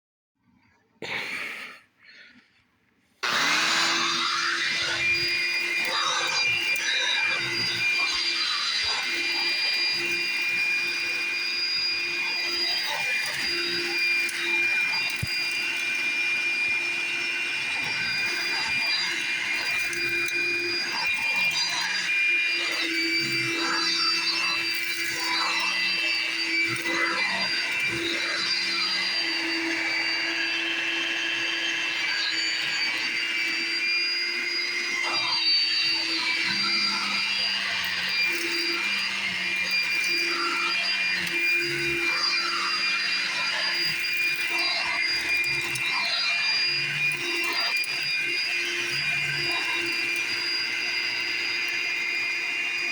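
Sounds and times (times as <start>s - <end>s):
vacuum cleaner running: 3.2s - 52.9s.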